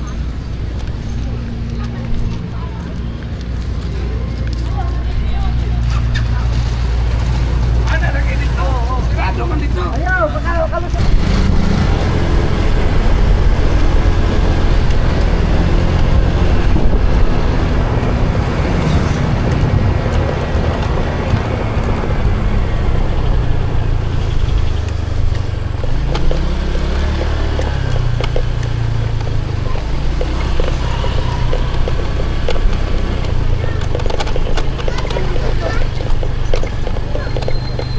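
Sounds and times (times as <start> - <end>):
road and wind noise: 0.0 - 37.9
vehicle engine running: 10.9 - 27.6.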